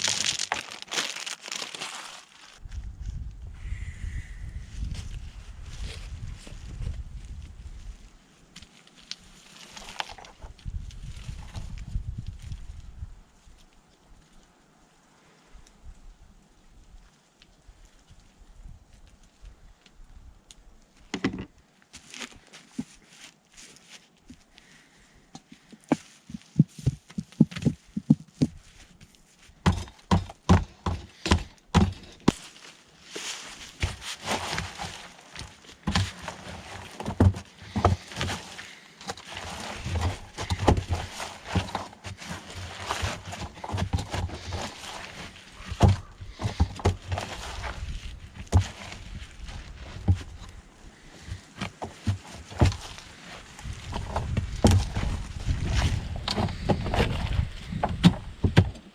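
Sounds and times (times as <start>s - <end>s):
footsteps: 25.4s - 58.6s.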